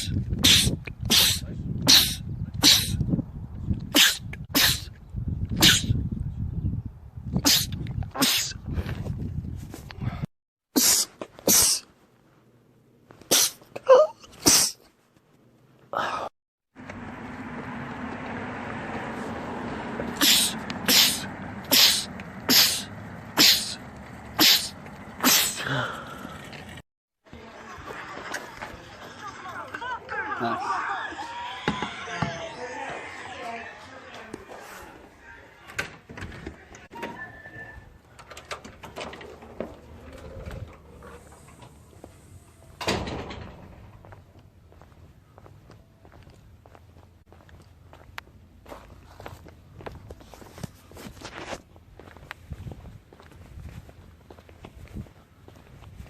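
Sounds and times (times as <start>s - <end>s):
person sneezing: 0.4s - 3.0s, 3.9s - 4.9s, 5.6s - 6.0s, 7.4s - 8.6s, 10.7s - 11.9s, 13.3s - 14.8s, 20.2s - 23.8s, 24.4s - 26.0s.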